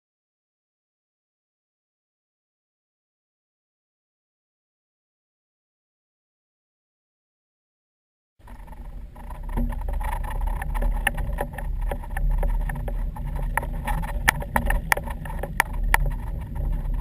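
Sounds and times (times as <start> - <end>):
boat engine rumble: 8.4 - 17.0
sharp knocks and clicks: 8.4 - 17.0.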